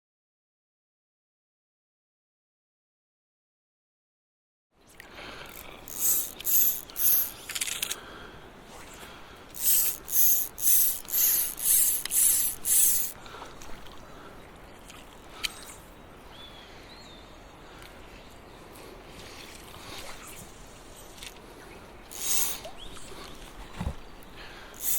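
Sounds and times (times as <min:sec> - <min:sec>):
fly reel ratcheting: 0:05.4 - 0:08.0, 0:09.5 - 0:13.2, 0:22.1 - 0:22.7.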